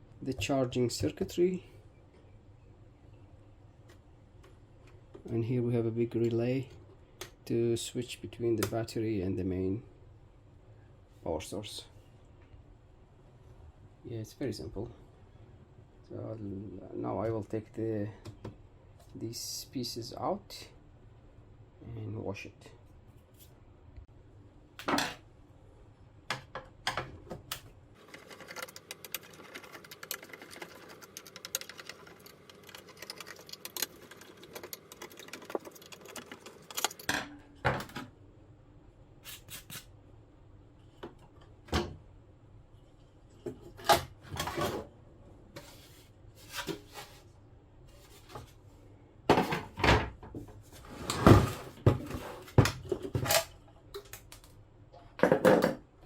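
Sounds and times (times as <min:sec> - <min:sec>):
small rapid ticks: 0:28.1 - 0:36.8.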